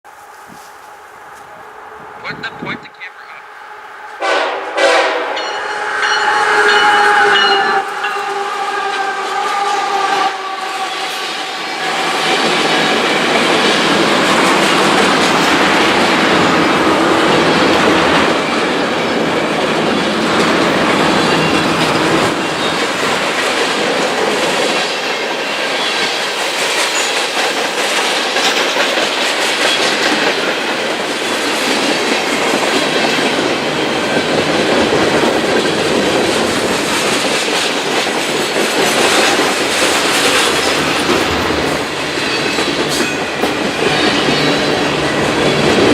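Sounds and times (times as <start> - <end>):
freight train cars rolling: 4.0 - 45.9
train wheel squeal: 5.4 - 13.7, 20.0 - 23.0, 24.8 - 27.4, 41.9 - 45.9.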